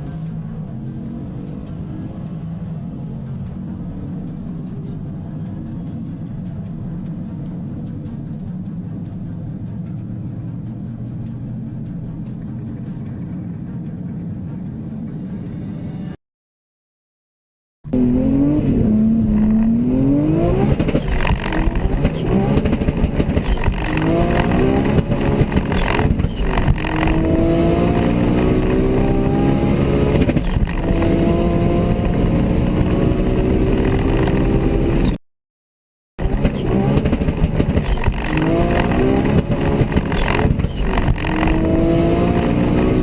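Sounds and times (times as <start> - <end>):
car engine accelerating hard: 17.9 - 35.2, 36.2 - 43.0.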